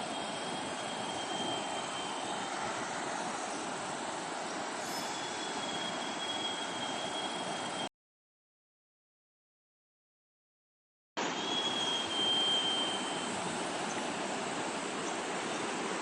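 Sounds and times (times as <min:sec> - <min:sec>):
river water flowing: 0:00.0 - 0:07.8, 0:11.2 - 0:16.0.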